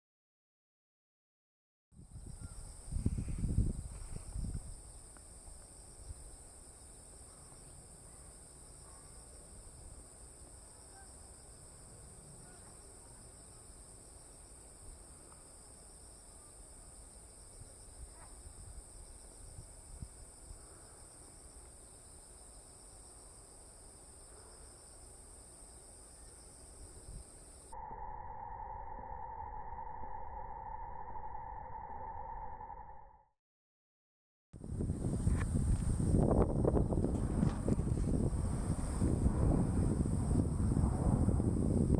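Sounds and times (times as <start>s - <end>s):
wind rumble on microphone: 2.0s - 6.5s, 17.5s - 20.7s, 34.6s - 41.9s
insects chirring: 2.1s - 33.0s, 34.6s - 41.9s.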